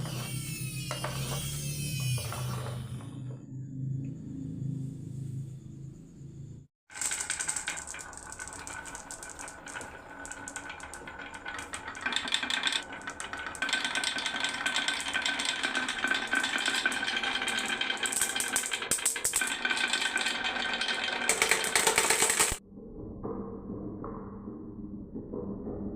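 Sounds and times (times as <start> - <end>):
marbles rattling down wooden run: 6.9 - 22.6.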